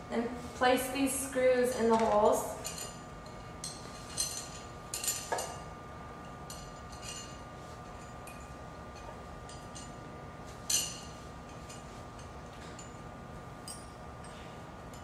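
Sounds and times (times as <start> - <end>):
metal screws clinking: 2.6 - 5.6, 6.2 - 10.0.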